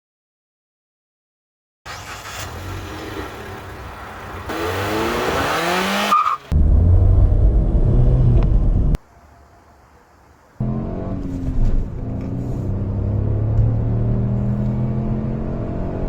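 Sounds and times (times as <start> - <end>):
car engine accelerating: 1.9 - 9.0, 10.6 - 16.0
loud low rumble: 6.5 - 9.0.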